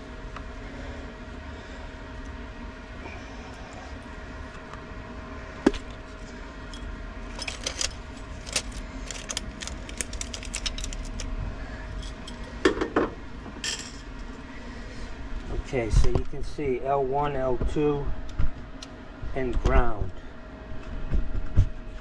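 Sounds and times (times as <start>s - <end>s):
small metallic clicks and clinks: 7.4s - 11.2s.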